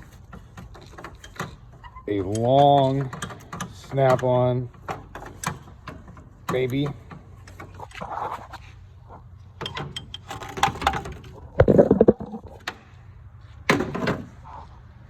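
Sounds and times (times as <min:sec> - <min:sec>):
tools clattering: 0:00.0 - 0:08.7, 0:09.5 - 0:12.9.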